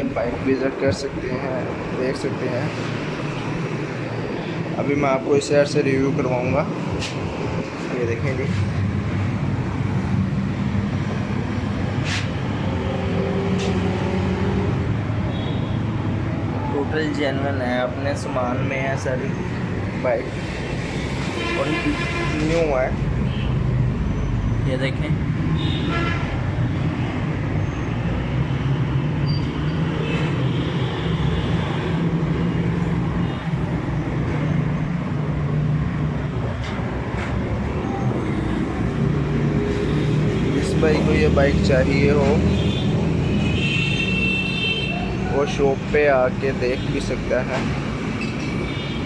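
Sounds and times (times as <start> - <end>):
engine and traffic rumble: 0.0 - 49.0
road noise: 0.0 - 49.0.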